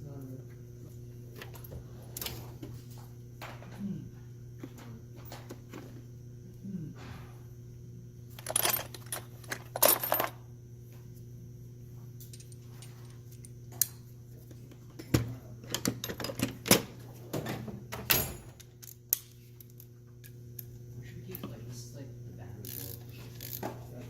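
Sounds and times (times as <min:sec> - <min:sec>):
low electrical hum: 0:00.0 - 0:24.0
small metal tools clinking: 0:08.4 - 0:10.4.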